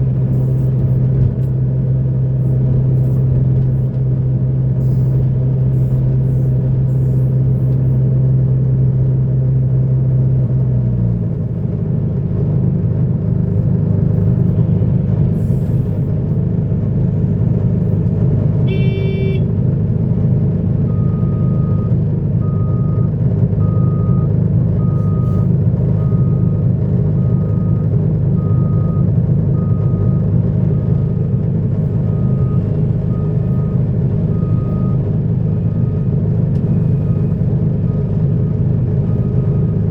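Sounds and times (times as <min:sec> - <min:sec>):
diesel machinery engine: 0:00.0 - 0:39.9
horn toot: 0:18.6 - 0:19.5
reversing alarm beeping: 0:18.7 - 0:19.5, 0:27.2 - 0:31.2, 0:32.1 - 0:35.0.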